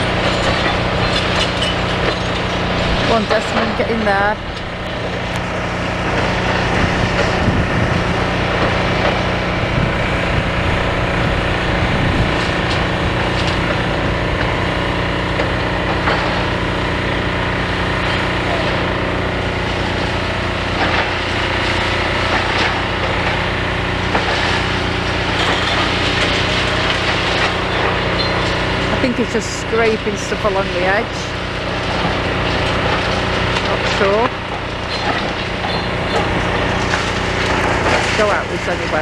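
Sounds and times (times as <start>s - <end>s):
concrete rubble scraping and crunching: 0.0s - 5.4s, 22.2s - 39.0s
excavator diesel engine: 0.0s - 39.0s.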